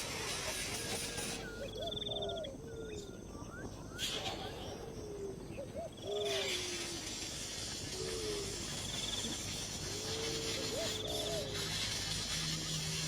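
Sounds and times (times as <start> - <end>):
steady hiss: 0.0 - 2.2, 6.0 - 13.0
young birds begging calls: 0.5 - 12.3
insect trilling: 5.9 - 13.0.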